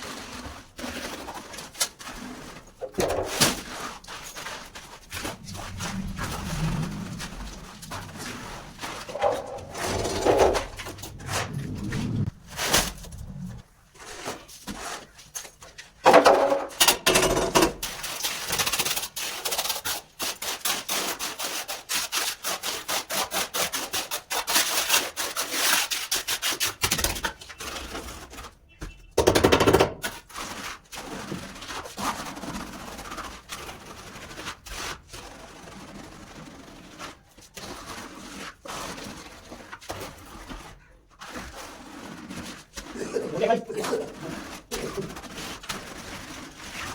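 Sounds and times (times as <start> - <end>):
hand tool scraping concrete: 0.0 - 15.0, 34.4 - 46.9.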